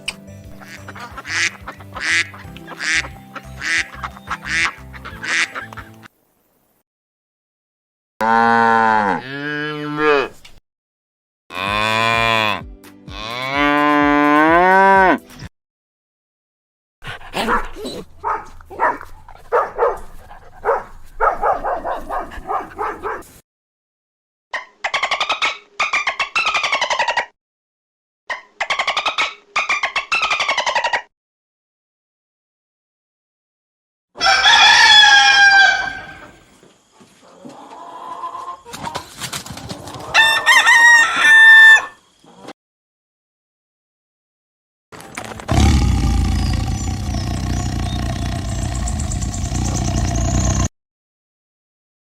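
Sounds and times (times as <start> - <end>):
music: 0.0 - 6.1, 11.6 - 15.5
rooster crowing: 34.2 - 36.4, 40.1 - 42.0
pulsed animal calls: 45.5 - 50.7.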